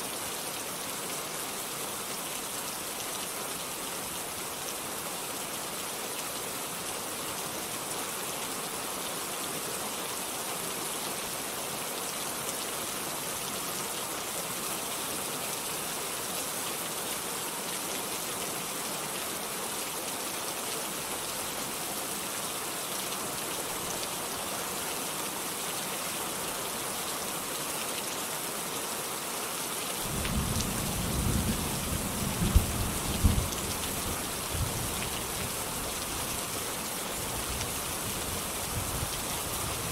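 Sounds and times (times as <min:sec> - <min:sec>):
heavy rain hissing: 0:30.0 - 0:39.9.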